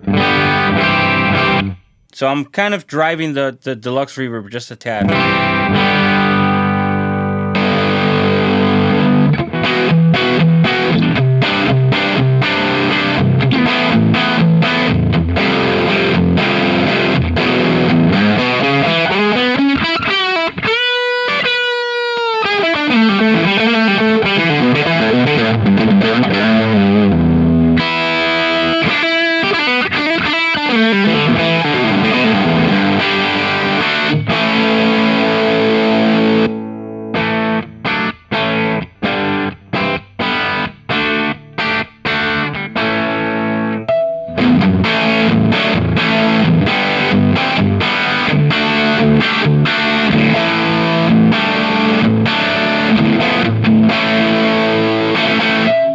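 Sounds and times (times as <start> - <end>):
overdriven electric guitar playing: 0.0 - 2.0, 5.0 - 55.9
guitar note bending in pitch: 5.0 - 21.7, 22.7 - 39.4, 42.3 - 55.9.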